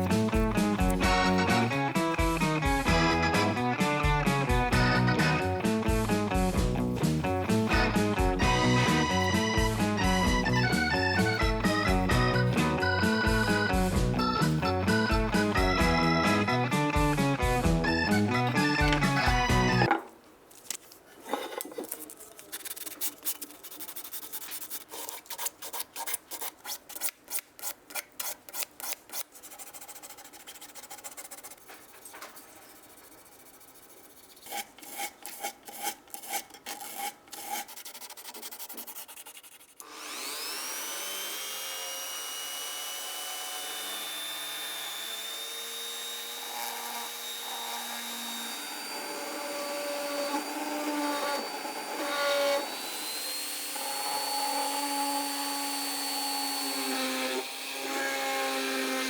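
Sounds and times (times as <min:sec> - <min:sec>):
abrasive rubbing strokes: 0:00.0 - 0:15.5
small electric tool whining: 0:00.0 - 0:20.0, 0:39.8 - 0:59.0.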